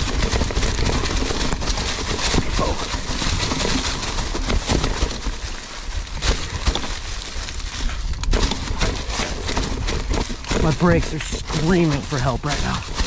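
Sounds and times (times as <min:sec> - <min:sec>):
tyres knocking over rocks: 0:00.0 - 0:07.3
mountain bike rattling: 0:00.0 - 0:13.0.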